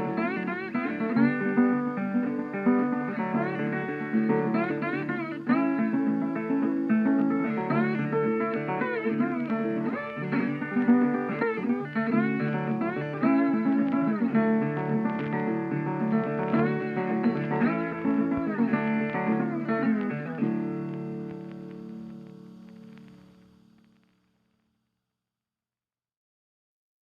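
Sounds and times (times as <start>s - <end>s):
guitar with bending sliding notes: 0.0s - 23.2s.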